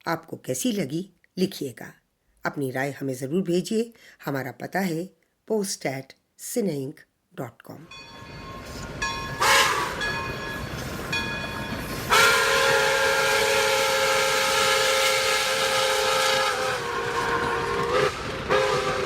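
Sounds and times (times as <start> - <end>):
train whistle blowing: 9.3 - 10.2, 12.0 - 19.0.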